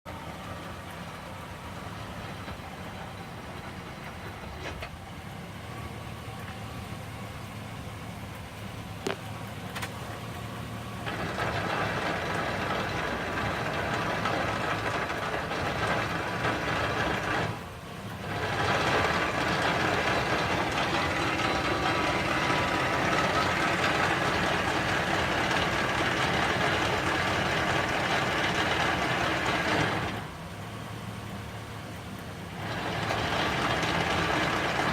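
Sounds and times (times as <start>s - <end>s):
truck engine idling: 0.0s - 34.9s
loud harsh grinding noise: 11.1s - 30.3s, 32.6s - 34.9s.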